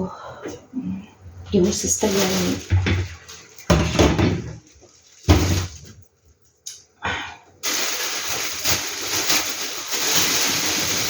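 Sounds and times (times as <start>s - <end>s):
tap running water: 2.4s - 4.4s.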